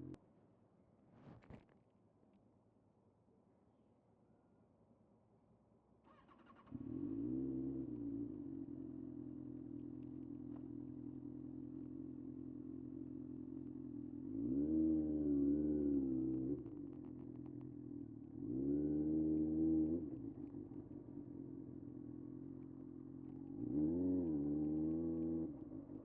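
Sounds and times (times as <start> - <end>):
motorcycle engine idling: 8.0 - 14.4.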